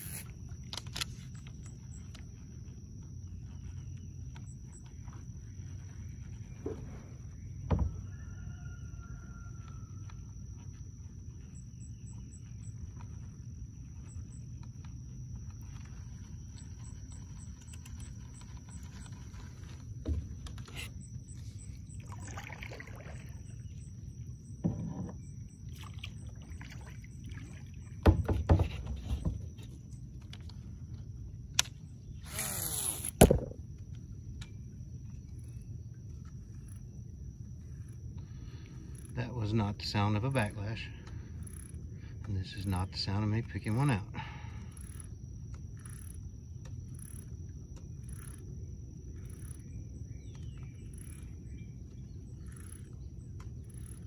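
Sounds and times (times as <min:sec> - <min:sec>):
fishing reel whirring: 0:00.0 - 0:02.8, 0:31.6 - 0:33.6, 0:45.7 - 0:48.4
low rumble of water and wind: 0:00.0 - 0:32.4, 0:33.0 - 0:54.0
hollow knocks against kayak: 0:06.6 - 0:08.1, 0:24.6 - 0:25.2, 0:28.0 - 0:29.7, 0:33.2 - 0:33.6.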